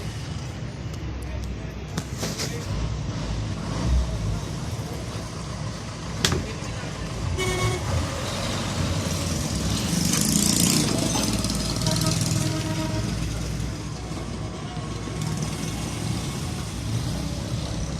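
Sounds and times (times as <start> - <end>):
vehicle engine rumble: 0.0 - 17.9.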